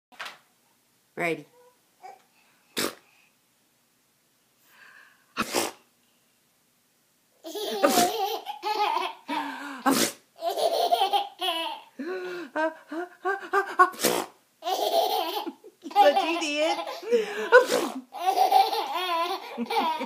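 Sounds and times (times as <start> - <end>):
short sharp sneezes: 2.8 - 3.0, 5.4 - 5.8, 9.9 - 10.2, 14.0 - 14.4, 17.6 - 18.0
young child laughing: 7.4 - 9.4, 10.4 - 11.9, 13.2 - 20.0.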